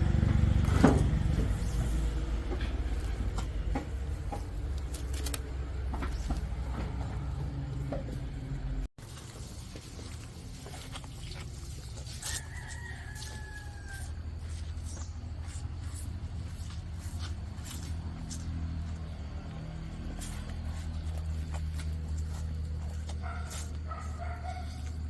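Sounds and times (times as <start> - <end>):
rooster crowing: 12.1 - 14.5, 23.2 - 25.0.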